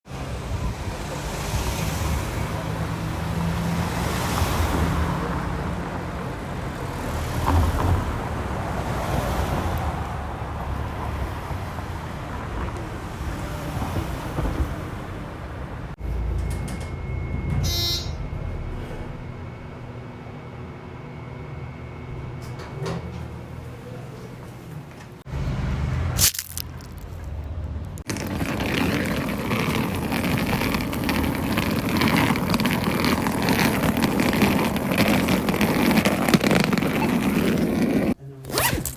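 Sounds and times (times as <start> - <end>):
skateboard wheels rolling on pavement: 0.1 - 16.0, 26.2 - 38.9
traffic rumble and hiss: 0.1 - 16.4, 22.2 - 38.9
low hum: 16.0 - 22.6
faint high whine: 16.0 - 22.8
short buzzing tone: 16.3 - 20.0.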